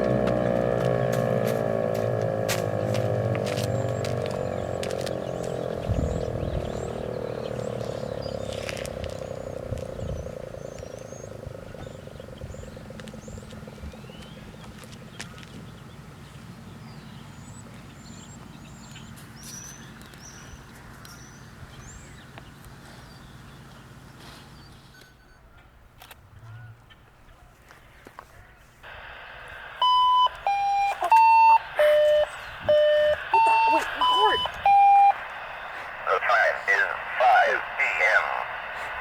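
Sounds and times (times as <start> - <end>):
warning siren winding down: 0.0 - 14.2, 28.9 - 39.0
birds chirping: 0.0 - 39.0.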